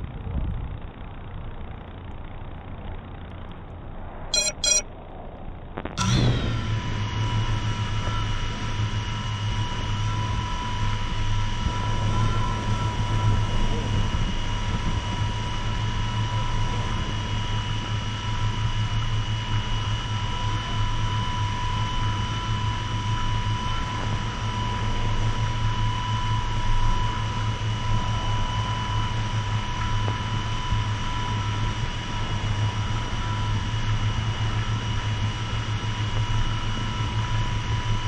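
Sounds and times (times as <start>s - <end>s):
drone motors whining: 6.0s - 8.4s.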